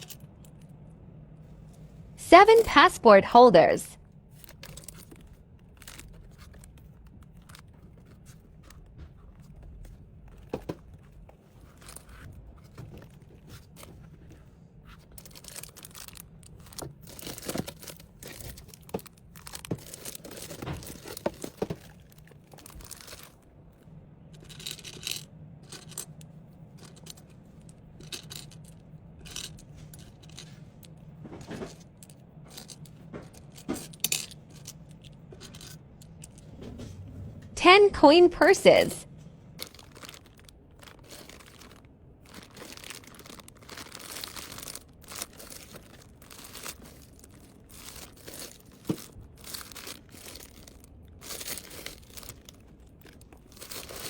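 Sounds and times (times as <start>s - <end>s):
low steady hum: 0.0s - 54.0s
plastic packaging crinkling: 4.4s - 8.8s, 15.0s - 23.4s, 39.6s - 54.0s.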